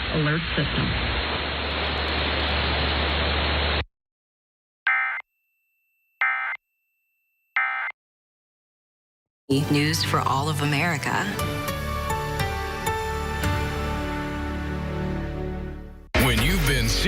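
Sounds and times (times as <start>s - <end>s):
static hiss: 0.0s - 3.8s.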